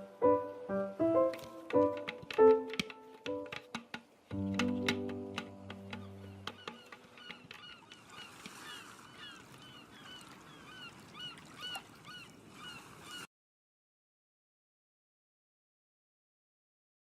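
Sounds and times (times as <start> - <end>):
birds calling: 1.2 - 13.3.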